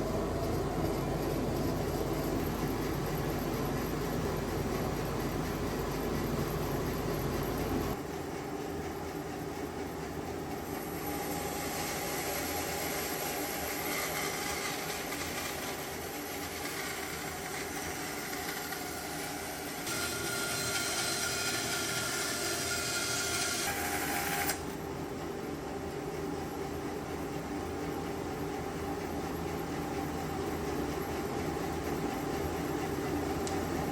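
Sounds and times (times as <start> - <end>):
bandsaw running: 11.0 - 24.6
blade cutting wood: 11.9 - 24.6.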